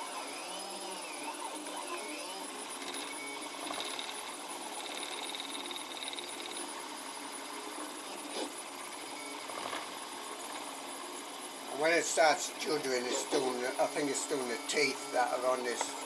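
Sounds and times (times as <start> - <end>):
stepper motors whirring: 0.0 - 16.0.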